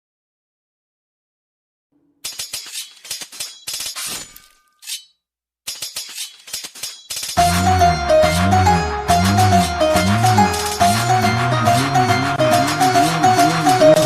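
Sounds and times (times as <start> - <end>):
glass shattering: 2.2 - 7.6.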